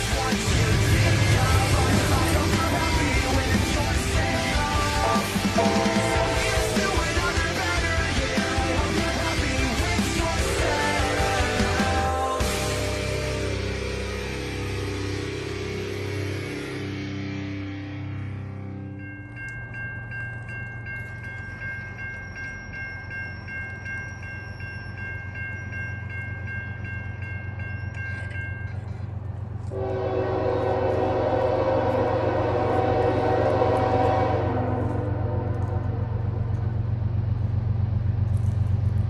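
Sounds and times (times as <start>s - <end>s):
railroad crossing bell ringing: 0.0s - 16.2s, 18.1s - 38.6s
diesel locomotive rumble: 0.0s - 39.0s
locomotive air horn: 1.4s - 7.2s, 29.6s - 36.4s.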